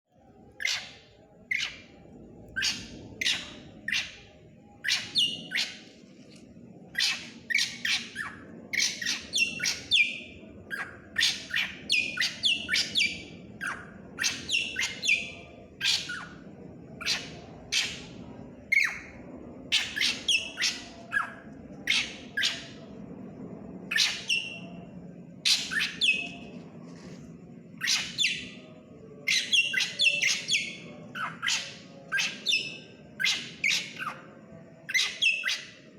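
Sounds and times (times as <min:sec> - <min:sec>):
bird singing sharp calls: 0:02.6 - 0:05.9, 0:06.9 - 0:16.4, 0:19.7 - 0:22.8, 0:25.4 - 0:26.4, 0:27.8 - 0:34.2, 0:34.9 - 0:35.8.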